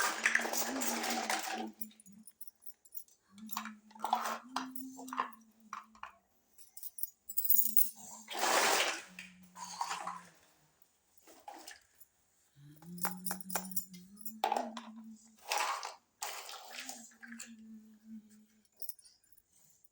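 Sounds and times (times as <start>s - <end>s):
toy kitchen pieces clinking: 0.0s - 6.1s.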